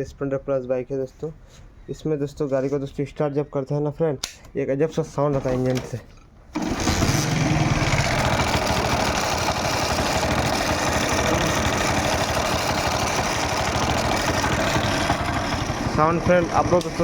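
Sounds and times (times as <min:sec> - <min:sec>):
motorcycle engine idling with clatter: 0:06.6 - 0:17.0.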